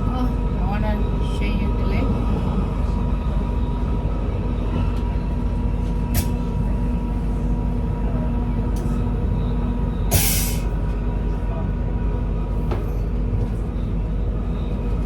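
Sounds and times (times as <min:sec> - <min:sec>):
train rumble inside carriage: 0:00.0 - 0:15.0
short hiss: 0:10.1 - 0:10.6.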